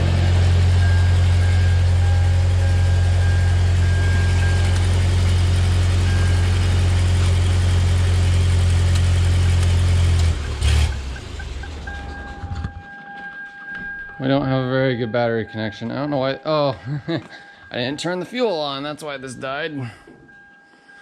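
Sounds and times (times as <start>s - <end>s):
engine idling and cutting out: 0.0s - 12.8s.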